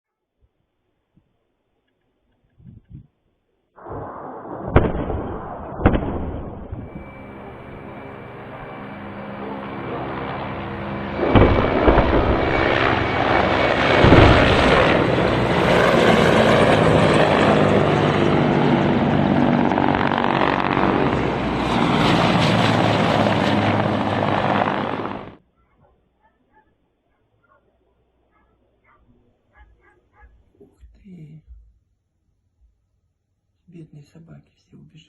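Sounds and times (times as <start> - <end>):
sharp loud blasts: 3.8 - 7.8, 11.2 - 16.1
helicopter rotor and turbine noise: 6.4 - 25.4.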